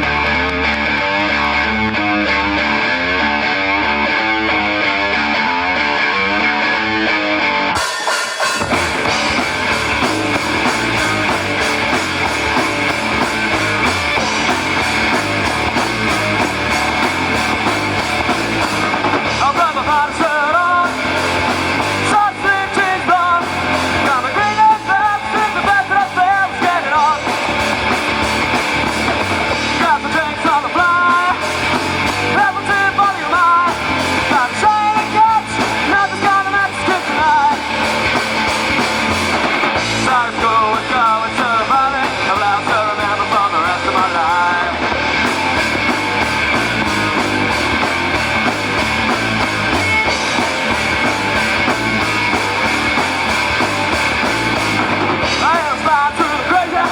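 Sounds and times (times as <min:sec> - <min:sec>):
bass guitar: 0:00.0 - 0:56.9
drums: 0:00.0 - 0:56.9
electric guitar: 0:00.0 - 0:56.9
person singing: 0:19.1 - 0:28.0, 0:29.5 - 0:38.1, 0:39.9 - 0:44.9, 0:55.2 - 0:56.9.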